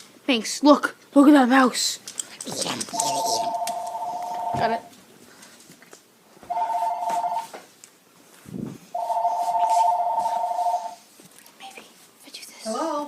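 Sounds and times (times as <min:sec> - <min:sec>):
phone ringing tone: 0:02.9 - 0:04.9, 0:06.5 - 0:07.6, 0:09.0 - 0:11.0.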